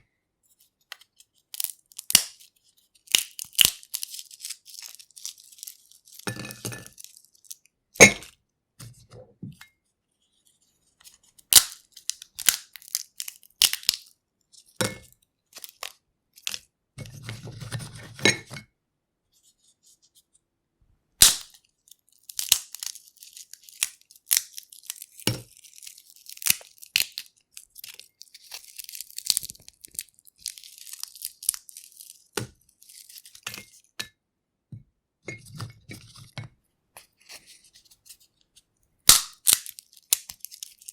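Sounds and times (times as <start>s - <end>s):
peanut shells cracking: 0.9s - 6.3s, 11.4s - 14.2s, 21.2s - 33.4s, 39.1s - 40.9s.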